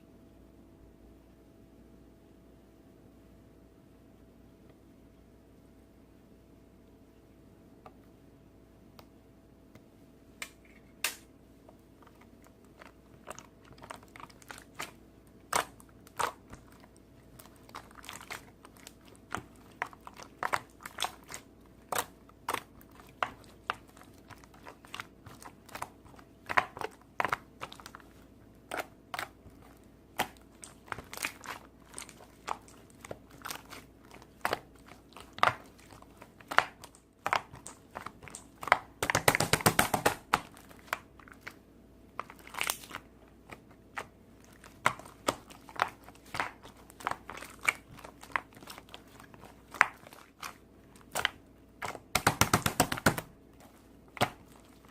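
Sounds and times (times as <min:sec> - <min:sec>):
slime crackling and popping: 0:12.0 - 0:53.3, 0:54.1 - 0:54.9.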